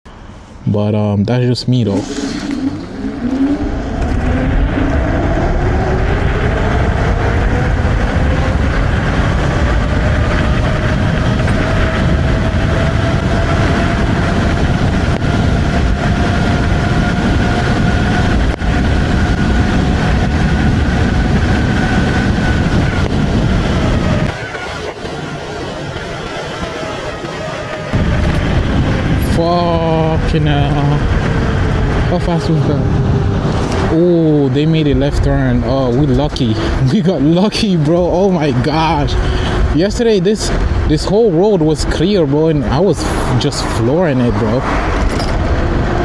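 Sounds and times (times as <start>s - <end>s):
wind rumble on microphone: 1.4s - 46.0s
electric scooter motor whining: 2.1s - 29.3s.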